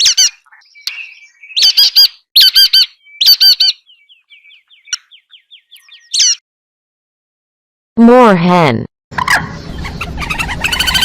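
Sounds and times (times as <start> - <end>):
nuthatch harsh nasal calls: 9.2 - 11.0
thin rapid bird notes: 9.2 - 11.0.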